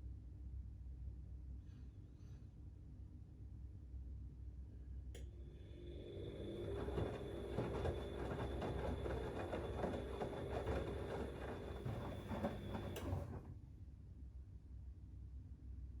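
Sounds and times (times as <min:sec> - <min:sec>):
washing machine motor whine: 0:05.3 - 0:13.5
wet laundry tumbling in drum: 0:06.7 - 0:13.5.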